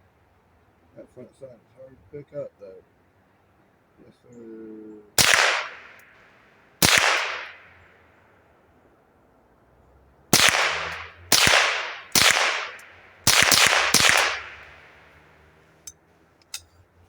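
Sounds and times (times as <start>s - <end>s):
rifle shots echoing: 5.2s - 7.8s, 10.3s - 15.3s.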